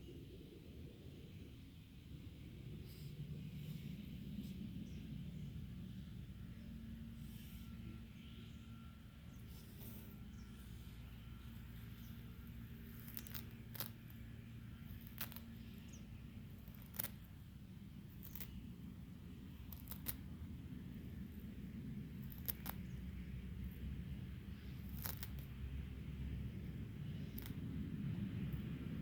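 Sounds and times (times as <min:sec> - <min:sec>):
low steady hum: 0:00.0 - 0:29.0
animal crunching food: 0:12.8 - 0:14.2, 0:14.8 - 0:15.6, 0:16.6 - 0:17.3, 0:18.1 - 0:18.6, 0:19.6 - 0:20.2, 0:22.2 - 0:22.8, 0:24.7 - 0:25.5.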